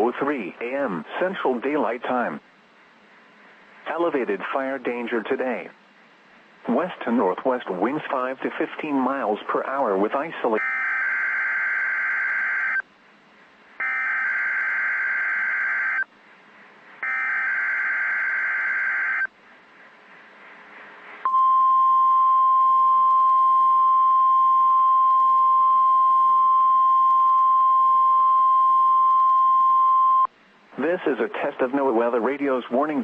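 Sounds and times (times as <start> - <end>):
loud warning alarm tone: 10.6 - 12.8, 13.8 - 16.0, 17.0 - 19.3.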